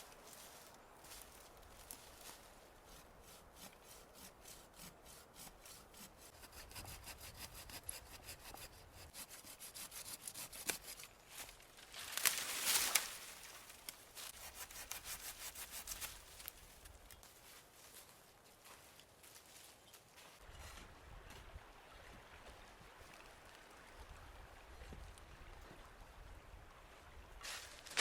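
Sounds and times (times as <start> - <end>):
hand saw cutting wood: 2.9 - 11.1, 14.2 - 16.4.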